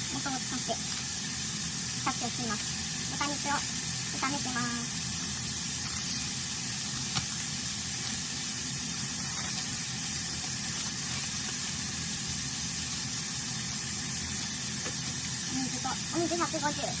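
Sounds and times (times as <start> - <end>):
meat sizzling in a pan: 0.0 - 17.0.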